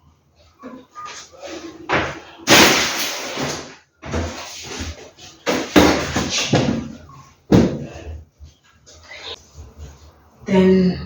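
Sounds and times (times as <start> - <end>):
items knocking when set down: 1.9 - 6.9.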